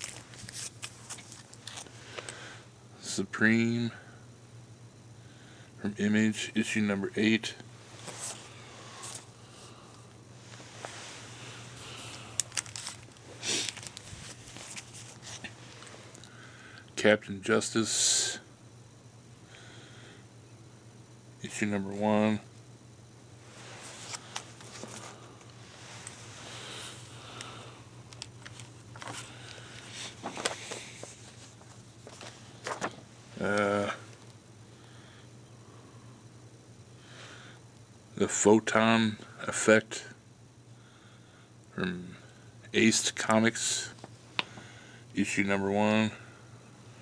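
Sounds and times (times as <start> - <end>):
comic books rustling: 0.0 - 2.0, 8.0 - 9.3, 10.5 - 16.0, 23.8 - 27.1, 28.1 - 33.6
faint steady hum: 0.0 - 47.0.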